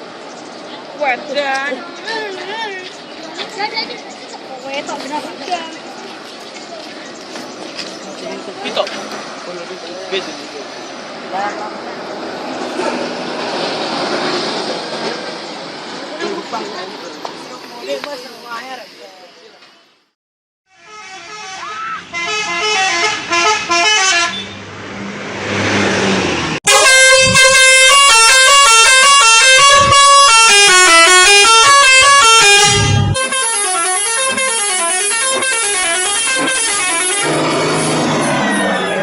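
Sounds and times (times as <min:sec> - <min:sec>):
multi-tone bus horn melody: 0:20.7 - 0:24.7, 0:26.6 - 0:39.0.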